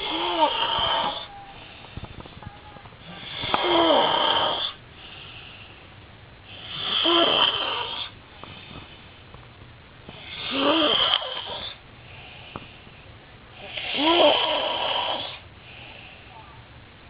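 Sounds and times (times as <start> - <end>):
man snoring loudly: 0.0 - 1.3, 3.2 - 4.8, 6.6 - 8.1, 10.2 - 11.8, 13.6 - 15.4
quiet breathing: 0.0 - 17.0.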